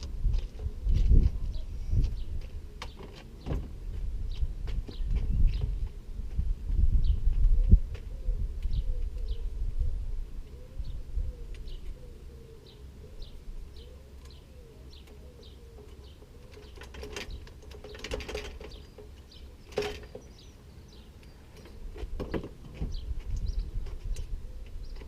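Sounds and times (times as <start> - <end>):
sharp clicks and knocks: 15.9 - 20.3.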